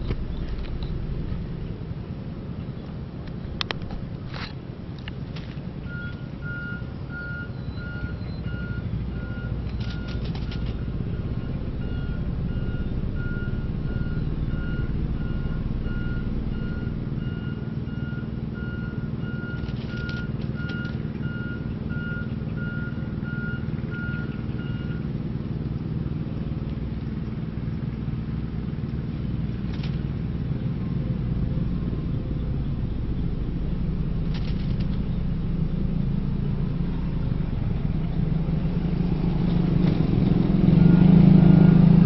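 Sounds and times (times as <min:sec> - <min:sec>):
low engine rumble: 0:00.0 - 0:42.0
reversing alarm beeping: 0:05.9 - 0:25.0.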